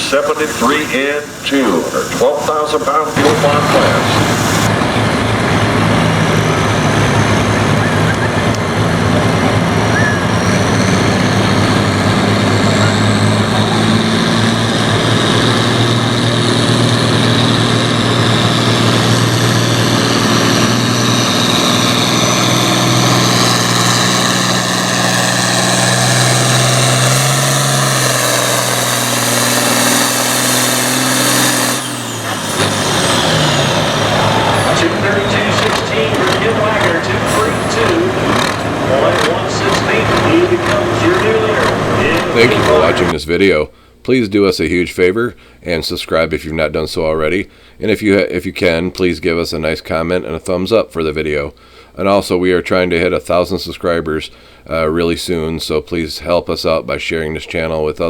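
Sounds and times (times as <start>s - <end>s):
tractor engine at full throttle: 0.0s - 43.2s.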